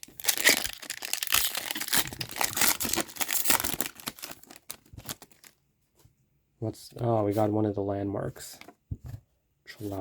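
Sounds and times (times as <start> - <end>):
plastic wrapper tearing and crinkling: 0.0 - 5.6.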